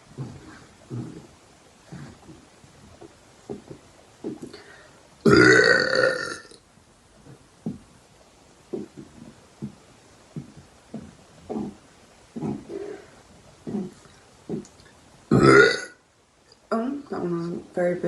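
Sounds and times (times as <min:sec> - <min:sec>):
woman burping: 0:05.3 - 0:06.6, 0:15.3 - 0:16.0.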